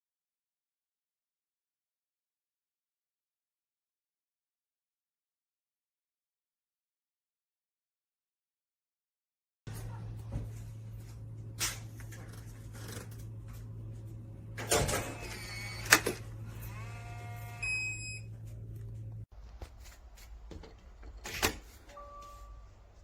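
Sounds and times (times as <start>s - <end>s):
steady electrical hum: 9.7s - 23.0s.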